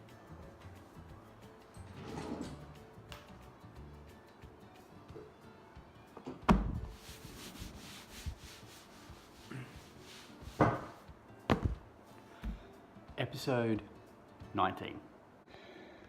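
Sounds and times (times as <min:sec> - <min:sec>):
faint background music: 0:00.0 - 0:16.0
rubbing sounds: 0:06.7 - 0:11.8.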